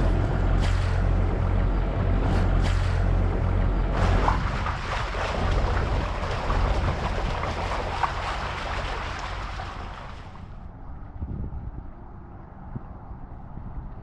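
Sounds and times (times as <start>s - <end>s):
water noise: 0.0s - 10.7s
wind rushing over microphone: 3.8s - 14.0s.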